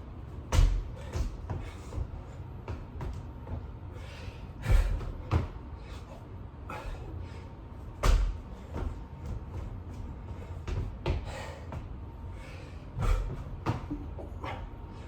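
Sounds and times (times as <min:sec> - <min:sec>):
heavy landing thumps on floor: 0:00.4 - 0:03.7, 0:04.6 - 0:05.7, 0:08.0 - 0:12.0, 0:13.0 - 0:14.3.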